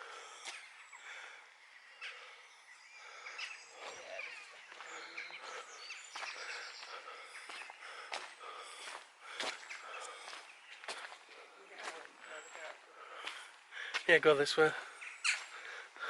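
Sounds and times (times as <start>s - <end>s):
small birds chirping: 0.0s - 16.0s
footsteps: 4.7s - 15.8s.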